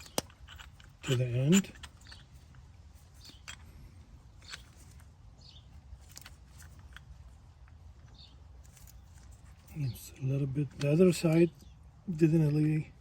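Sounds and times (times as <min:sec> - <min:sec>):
metal parts knocking: 0:00.0 - 0:05.0.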